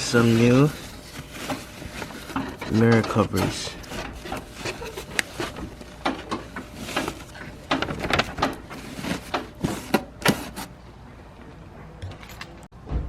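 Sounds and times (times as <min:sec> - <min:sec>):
hand tools clicking and rattling: 0:00.2 - 0:09.6.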